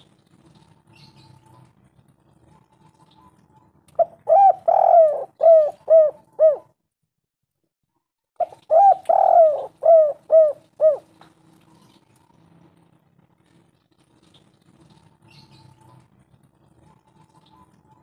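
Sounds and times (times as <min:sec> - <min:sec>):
dove cooing: 0:02.5 - 0:06.8, 0:08.4 - 0:11.2.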